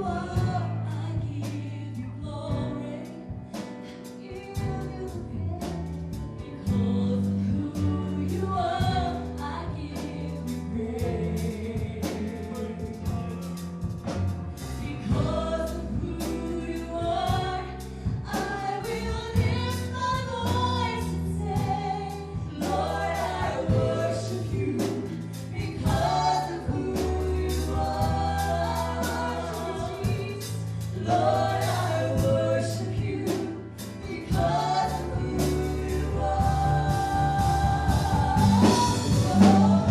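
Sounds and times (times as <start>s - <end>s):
band with bass and drums: 0.0s - 39.9s
group singing praise song: 14.8s - 39.9s.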